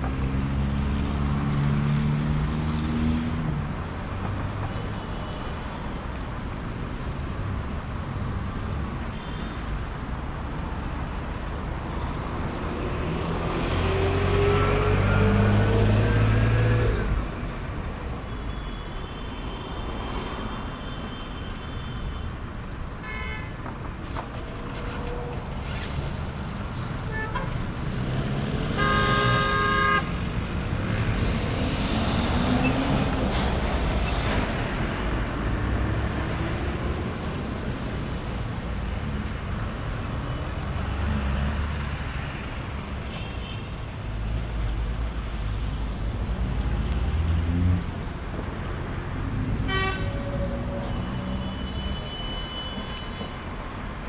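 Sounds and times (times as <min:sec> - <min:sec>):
city street traffic: 0:00.0 - 0:54.0
car horn honking: 0:23.0 - 0:23.6, 0:27.1 - 0:30.4, 0:49.5 - 0:53.4.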